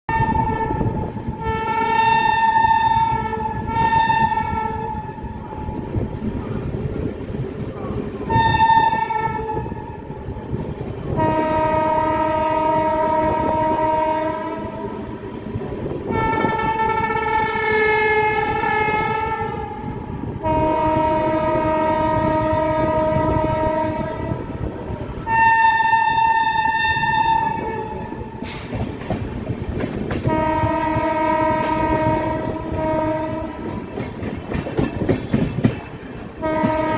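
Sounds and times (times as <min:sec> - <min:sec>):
shrill locomotive horn: 0:00.1 - 0:05.6, 0:08.3 - 0:10.0, 0:11.2 - 0:15.2, 0:16.1 - 0:24.6, 0:25.2 - 0:28.4, 0:30.3 - 0:33.9, 0:36.4 - 0:36.9
train wheels clickety-clack on rails: 0:00.1 - 0:36.9.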